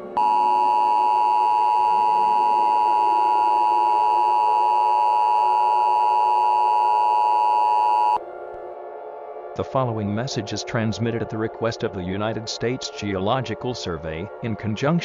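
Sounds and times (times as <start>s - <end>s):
harsh two-tone alarm: 0.0s - 8.2s.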